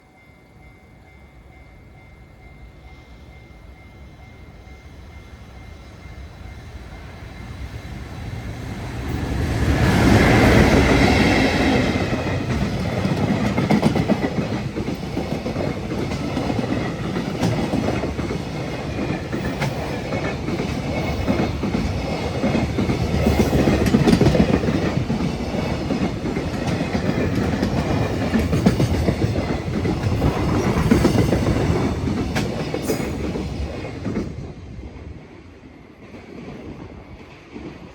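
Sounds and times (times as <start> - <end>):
freight train passing: 0.0 - 37.9.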